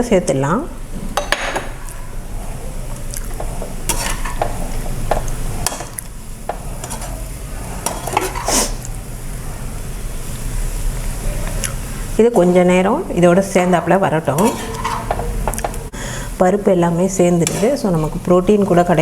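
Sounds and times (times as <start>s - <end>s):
light sizzling: 0.3s - 19.0s
spatula scraping in frying pan: 1.7s - 9.0s, 13.3s - 15.9s, 17.1s - 18.8s.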